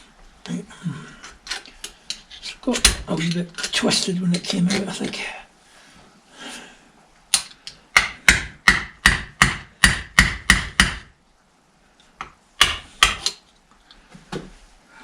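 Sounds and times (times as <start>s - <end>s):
hammer strikes on metal: 7.9s - 11.1s, 12.6s - 13.4s.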